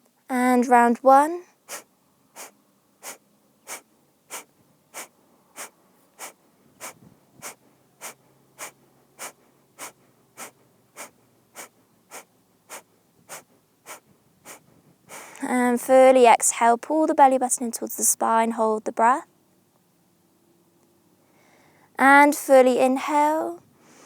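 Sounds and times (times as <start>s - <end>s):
forceful exhales through nose: 1.7s - 15.4s.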